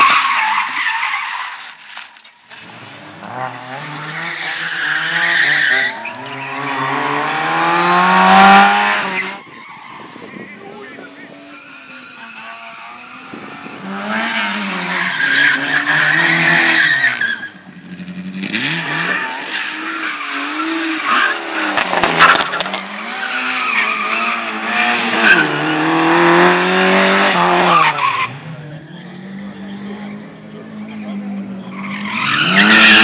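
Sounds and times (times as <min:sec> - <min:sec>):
car engine revving hard: 0:02.7 - 0:09.4, 0:18.1 - 0:28.6.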